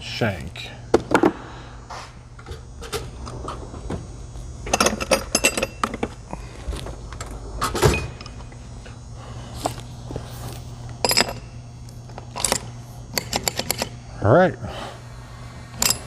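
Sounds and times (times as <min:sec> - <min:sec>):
steady low hum: 0:00.0 - 0:16.0
metal clicks and rattling: 0:12.1 - 0:14.0.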